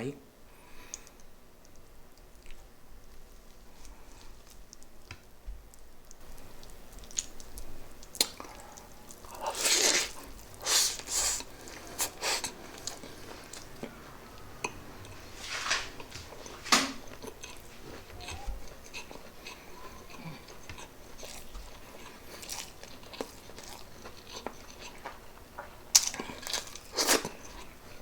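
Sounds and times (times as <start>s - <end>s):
chewing and biting: 5.7s - 15.2s, 16.0s - 28.0s.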